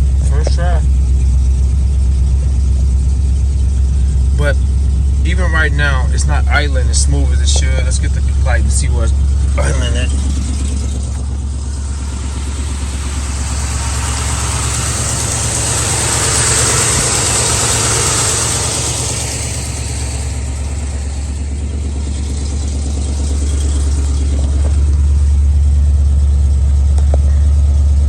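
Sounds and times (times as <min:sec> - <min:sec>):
car engine idling roughly: 0:00.0 - 0:28.0
rushing hiss: 0:11.6 - 0:21.4.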